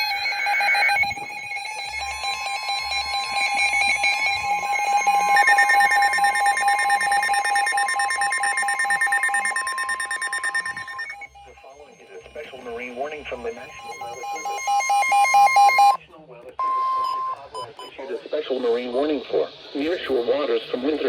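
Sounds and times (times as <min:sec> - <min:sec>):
higher beeping alarm: 0:00.0 - 0:16.0
rapid alarm beeping: 0:00.0 - 0:16.0
steady warning alarm tone: 0:00.0 - 0:16.0.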